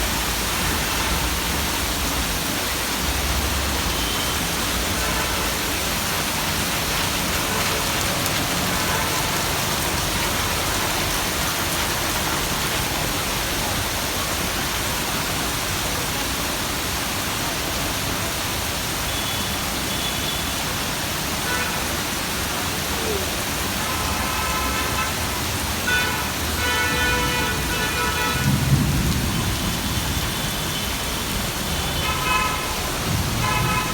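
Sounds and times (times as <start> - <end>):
heavy rain falling: 0.0 - 33.9
vehicle horn: 25.9 - 28.7, 30.2 - 33.9.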